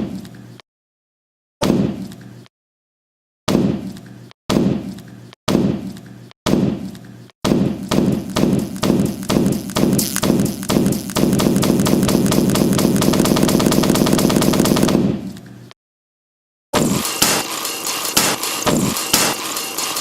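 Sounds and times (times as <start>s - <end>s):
heavy thuds with low ringing: 7.5s - 13.0s.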